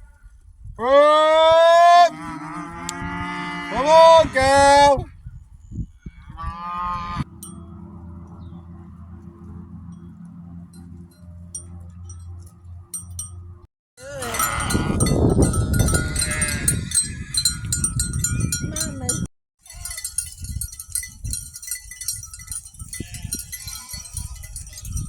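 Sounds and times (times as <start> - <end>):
sheep bleating: 0.8 - 5.0, 14.0 - 15.1, 15.8 - 17.4, 19.6 - 20.1
wind buffeting microphone: 1.5 - 10.2, 14.0 - 25.0.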